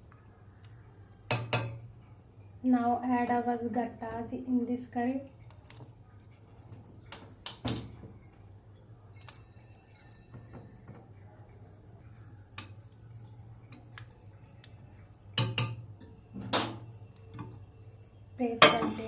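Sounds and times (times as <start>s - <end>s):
spoon knocking against a dish: 15.4s - 15.8s.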